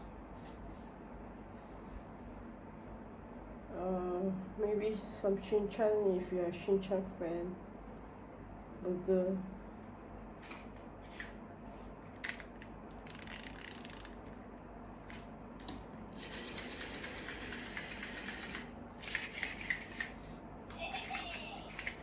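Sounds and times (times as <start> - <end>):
small objects clicking on a desk: 21.0 - 22.0.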